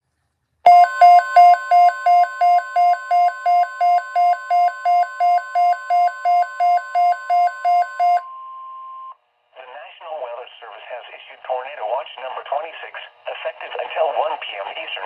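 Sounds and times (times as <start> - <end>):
pulsing two-tone beep: 0.7 - 9.2.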